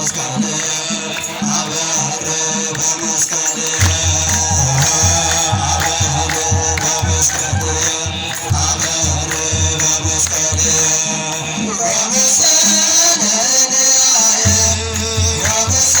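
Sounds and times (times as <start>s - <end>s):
chanted singing: 0.0s - 16.0s
jingling hand percussion: 0.0s - 16.0s
low drum beat: 3.8s - 11.7s, 14.4s - 16.0s.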